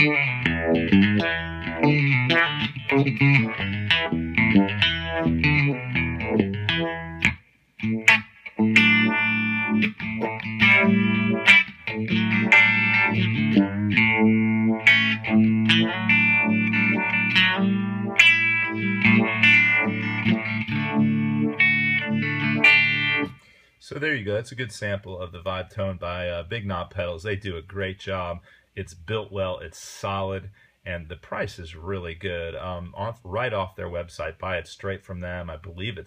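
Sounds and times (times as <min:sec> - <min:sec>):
electric guitar chords with vibe effect: 0:00.0 - 0:23.4.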